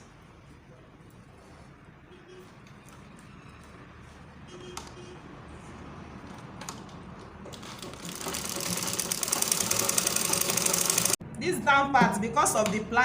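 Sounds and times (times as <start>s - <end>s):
sewing machine stitching: 7.5s - 11.2s.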